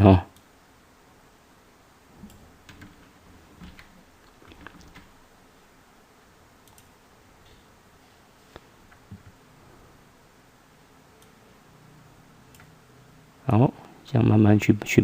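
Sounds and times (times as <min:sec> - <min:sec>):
computer mouse and keyboard clicks: 0:02.2 - 0:05.1, 0:06.6 - 0:06.9.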